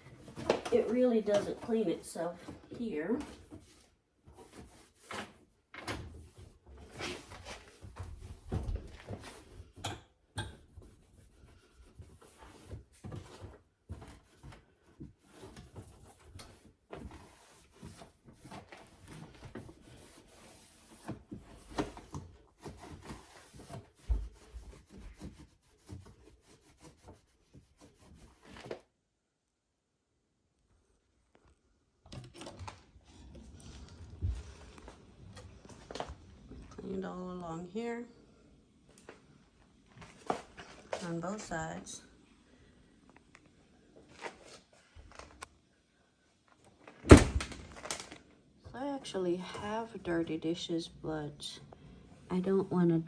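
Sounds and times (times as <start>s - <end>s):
cloth scrubbing inside dishwasher: 0.0s - 28.7s.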